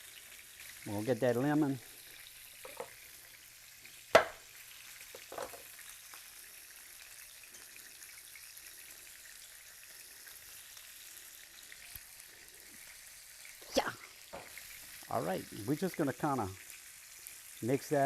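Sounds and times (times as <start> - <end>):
meat sizzling in a pan: 0.0 - 18.0
faint handling noises: 2.6 - 3.0, 5.2 - 5.6
sharp knock: 4.2 - 4.4.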